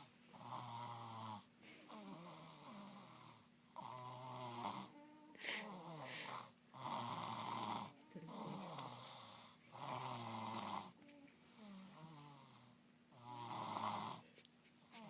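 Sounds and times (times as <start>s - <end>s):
child snoring: 0.3s - 11.0s, 13.2s - 14.2s.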